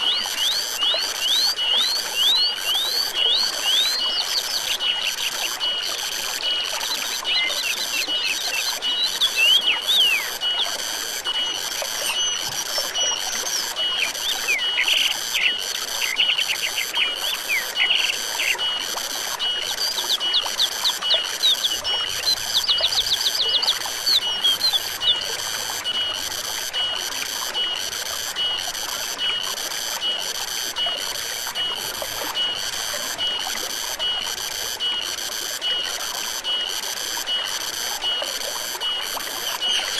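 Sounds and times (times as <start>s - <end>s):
birds chirping and trilling: 0.0s - 5.6s, 6.9s - 10.8s, 11.4s - 18.6s, 19.7s - 25.2s
pulsing insect chorus: 0.0s - 39.9s
running water hissing: 0.0s - 39.9s.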